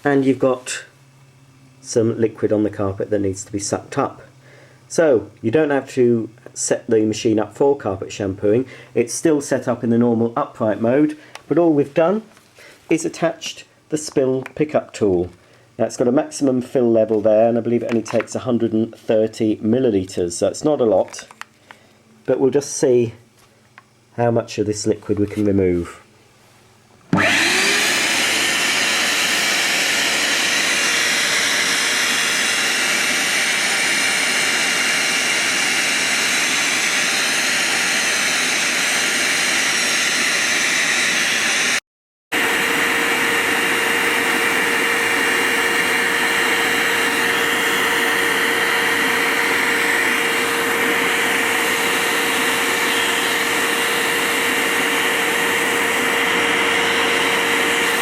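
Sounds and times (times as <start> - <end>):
vacuum cleaner motor humming: 27.1 - 41.8, 42.4 - 58.0
vacuum sucking liquid: 27.2 - 41.8, 42.4 - 58.0.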